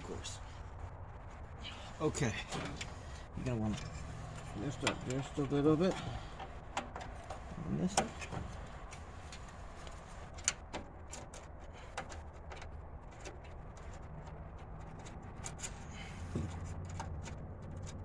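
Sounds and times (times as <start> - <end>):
steady low hum: 0.0 - 10.5.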